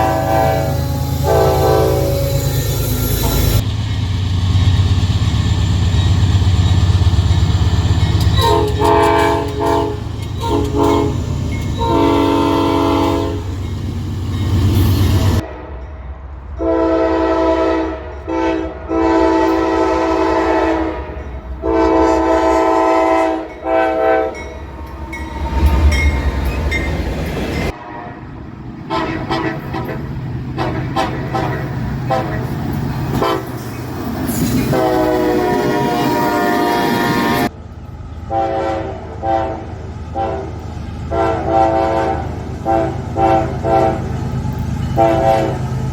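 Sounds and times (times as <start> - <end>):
locomotive air horn blasts: 0.0 - 3.6, 8.4 - 13.6, 15.2 - 15.8, 16.6 - 24.4, 28.9 - 32.5, 33.1 - 33.6, 34.5 - 37.5, 38.3 - 44.1, 45.0 - 45.7
low train rumble: 0.0 - 45.9.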